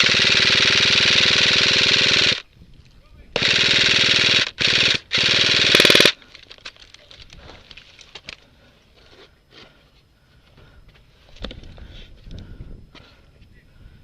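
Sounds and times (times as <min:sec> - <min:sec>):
airsoft rifle firing bursts: 0:00.0 - 0:02.4, 0:03.4 - 0:06.2.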